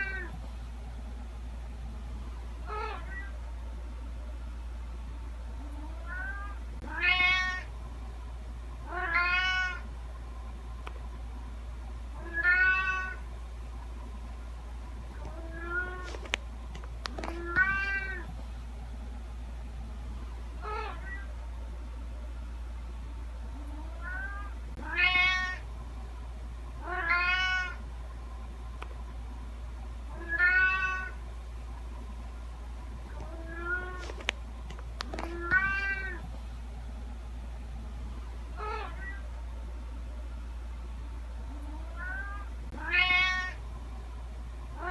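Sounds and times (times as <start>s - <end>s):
steady low hum: 0.0s - 44.9s
cat meowing: 2.7s - 3.3s, 5.8s - 7.7s, 8.9s - 9.8s, 12.2s - 13.2s, 17.3s - 18.3s, 20.6s - 21.3s, 23.8s - 25.6s, 26.8s - 27.8s, 30.2s - 31.2s, 33.2s - 34.0s, 35.2s - 36.2s, 38.6s - 39.2s, 41.7s - 43.6s.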